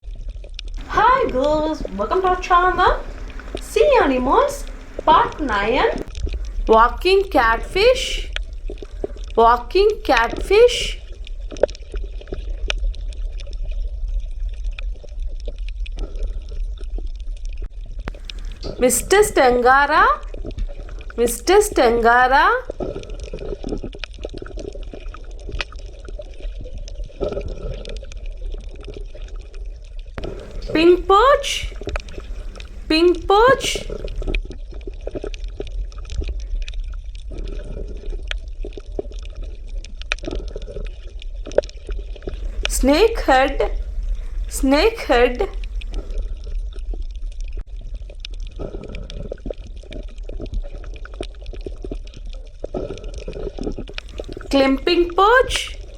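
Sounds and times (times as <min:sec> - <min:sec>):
small irregular clicks: 0:00.5 - 0:06.7, 0:18.1 - 0:18.8, 0:31.7 - 0:32.9
steady low hum: 0:00.8 - 0:11.1, 0:18.1 - 0:23.1, 0:30.2 - 0:34.4, 0:42.4 - 0:46.2
water trickling and splashing: 0:00.8 - 0:14.2, 0:18.1 - 0:55.9
low rumble: 0:43.5 - 0:44.6.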